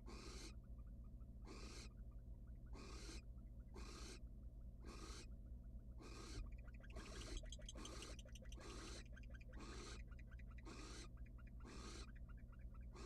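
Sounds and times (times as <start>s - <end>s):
faint low hum: 0.0s - 13.0s
owl rasping hissing calls: 0.1s - 0.6s, 1.4s - 1.9s, 2.8s - 3.2s, 3.8s - 4.2s, 4.8s - 5.3s, 6.0s - 13.0s.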